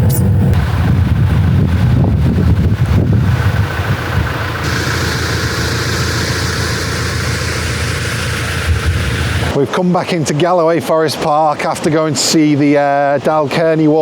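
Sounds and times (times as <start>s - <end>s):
vehicle engine and road noise: 0.0s - 9.7s.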